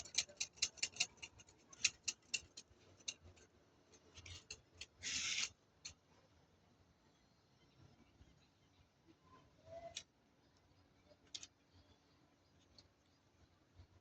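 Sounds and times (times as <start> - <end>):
comb scratching through hair: 4.2 - 5.5.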